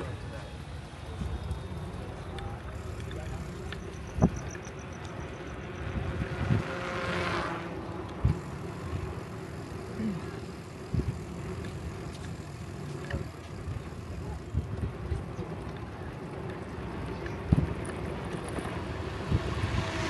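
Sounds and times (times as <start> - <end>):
low riding rumble: 0.0 - 20.0
wind on microphone: 4.1 - 4.6, 5.8 - 7.2, 18.6 - 20.0.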